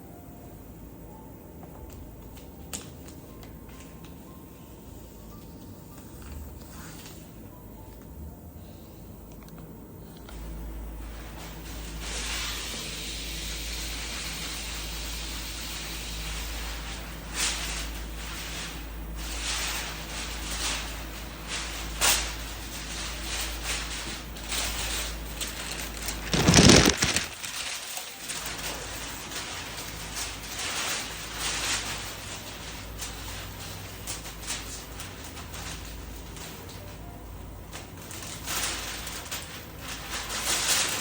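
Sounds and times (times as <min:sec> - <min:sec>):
machine humming: 0:00.0 - 0:41.0
hiss: 0:11.4 - 0:25.1.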